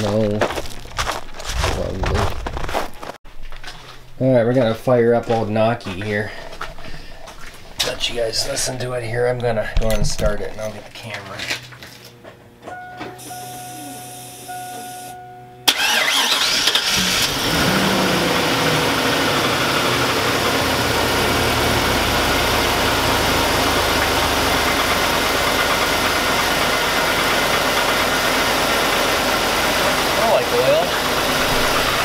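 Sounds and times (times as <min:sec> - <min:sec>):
engine starting and idling: 0:15.6 - 0:32.0
engine knocking: 0:19.2 - 0:32.0.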